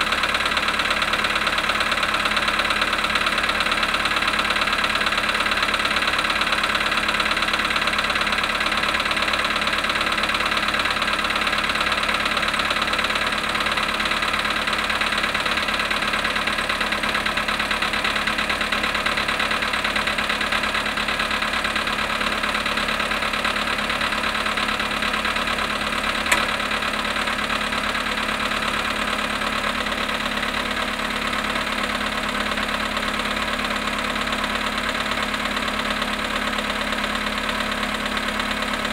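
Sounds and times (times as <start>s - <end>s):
car engine idling with knock: 0.0s - 38.9s
sharp click: 26.2s - 26.6s.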